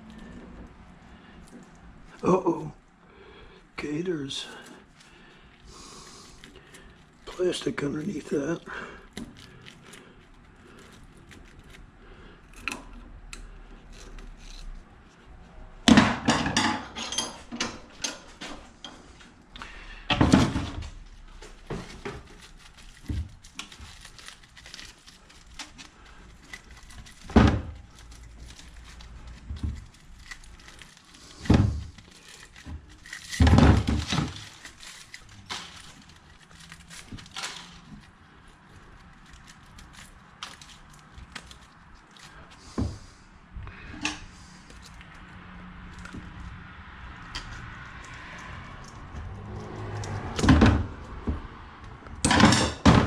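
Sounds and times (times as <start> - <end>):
scrap metal thunks and clatter: 25.3 - 38.2, 52.2 - 53.0.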